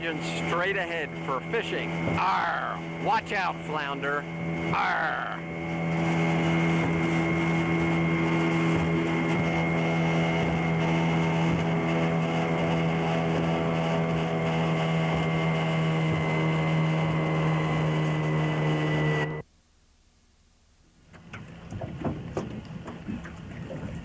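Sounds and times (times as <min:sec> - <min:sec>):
rushing water: 0:00.0 - 0:19.4
motorboat engine running: 0:00.0 - 0:19.5, 0:20.7 - 0:24.0
rushing wind: 0:04.2 - 0:18.9.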